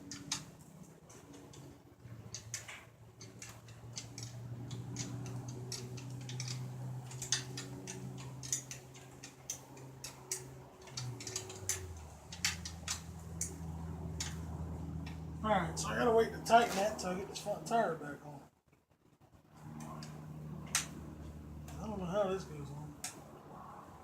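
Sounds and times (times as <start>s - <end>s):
hand wrench clicking: 0.0s - 15.2s.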